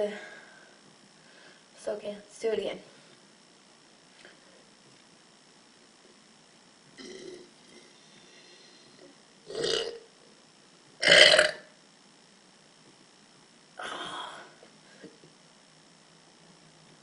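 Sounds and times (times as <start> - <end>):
girl burping: 9.5 - 10.0, 11.0 - 11.7.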